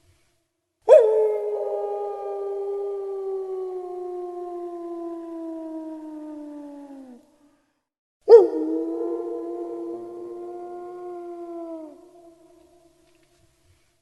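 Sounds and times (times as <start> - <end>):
wolf howling: 0.9 - 7.3, 8.3 - 12.9.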